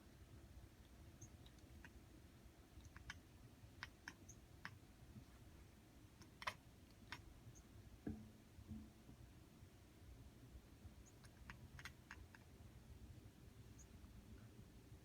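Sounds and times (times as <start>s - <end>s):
faint small clicks: 0.8s - 2.0s, 2.8s - 3.2s, 3.8s - 4.8s, 6.2s - 7.3s, 11.1s - 12.5s.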